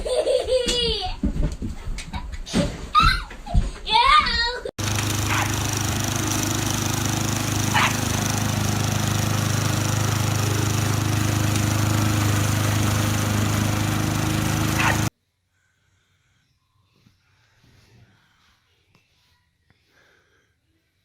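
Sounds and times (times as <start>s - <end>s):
loud motor drone: 4.8s - 15.1s.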